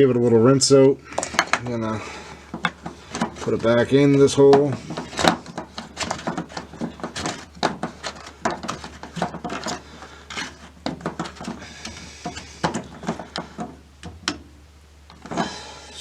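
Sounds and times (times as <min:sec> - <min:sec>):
plastic clicks and scrapes: 0:02.3 - 0:14.4.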